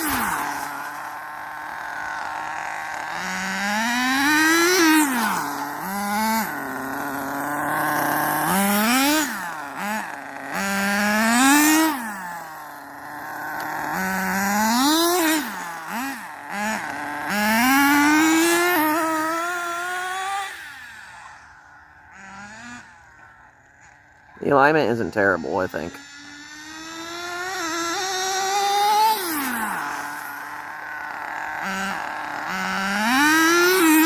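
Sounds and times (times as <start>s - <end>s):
rc car motor whining: 0.0s - 34.0s.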